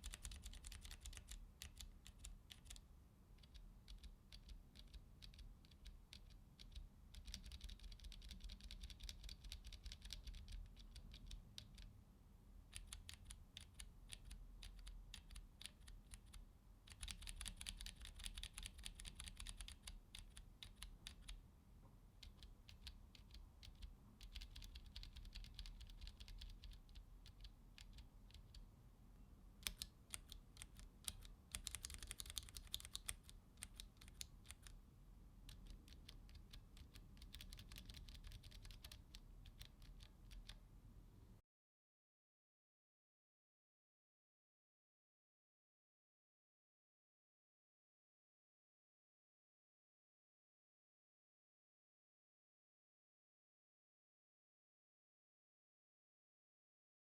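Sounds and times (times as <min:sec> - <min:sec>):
typing on mechanical keyboard: 0:00.0 - 0:02.8, 0:03.4 - 0:11.9, 0:12.7 - 0:21.4, 0:22.2 - 0:28.6, 0:29.6 - 0:34.8, 0:35.5 - 0:40.6.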